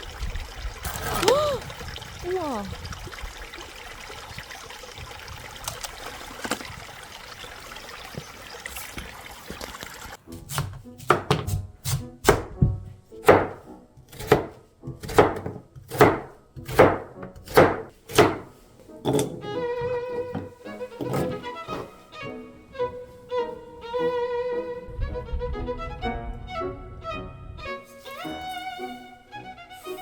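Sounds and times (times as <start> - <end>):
stream running: 0.0 - 10.2
knife chopping on cutting board: 10.3 - 19.4.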